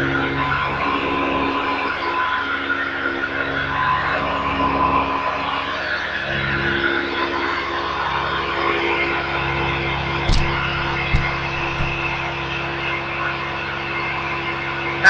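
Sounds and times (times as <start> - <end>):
sharp knock: 10.3 - 12.3.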